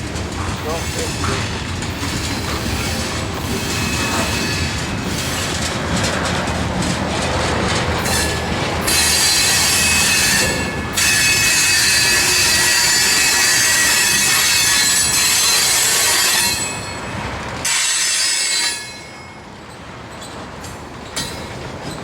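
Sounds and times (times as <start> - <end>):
train wheels clicking over rail joints: 0.0 - 22.0
high wheel squeal: 0.6 - 5.4, 8.0 - 19.4.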